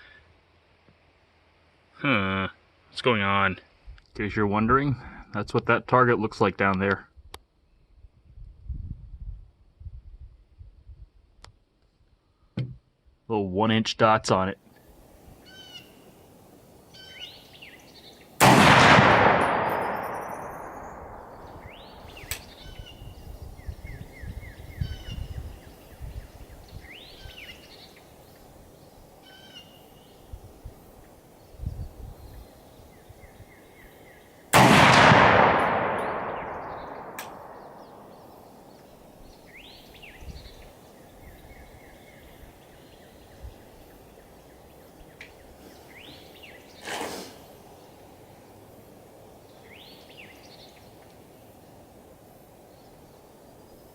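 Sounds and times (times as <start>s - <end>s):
birds chirping: 15.4s - 48.8s, 49.4s - 51.8s
rifle shots with echo: 18.4s - 22.6s, 34.5s - 38.7s.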